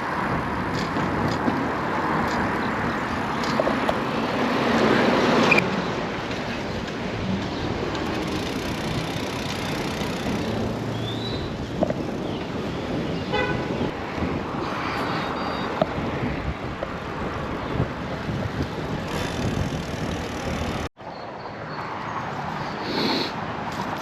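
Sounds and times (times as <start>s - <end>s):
wind while cycling: 0.0s - 24.0s
bicycle wheels rolling: 6.3s - 13.1s, 18.2s - 20.9s.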